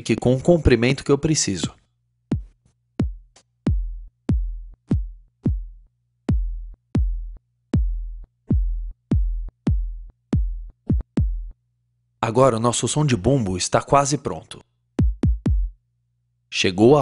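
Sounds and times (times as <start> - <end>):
synthesized kick drum thumps: 2.3 - 11.6, 15.0 - 15.8.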